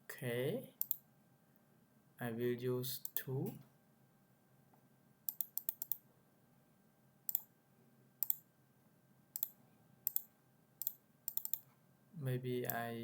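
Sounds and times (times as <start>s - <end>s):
faint low hum: 0.0s - 13.0s
computer mouse double clicks: 5.3s - 6.0s, 10.1s - 11.6s.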